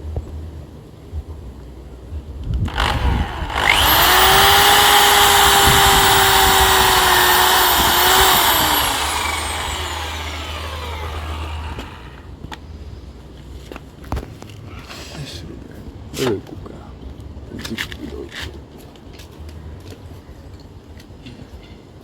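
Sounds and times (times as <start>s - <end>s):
power tool motor whining: 2.7s - 12.3s.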